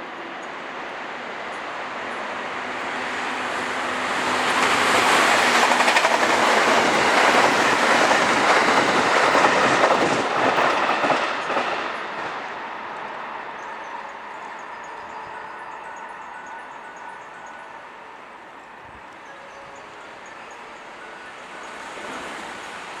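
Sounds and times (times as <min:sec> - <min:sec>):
freight train passing: 0:00.0 - 0:23.0
wheels clicking over rails: 0:04.6 - 0:12.4.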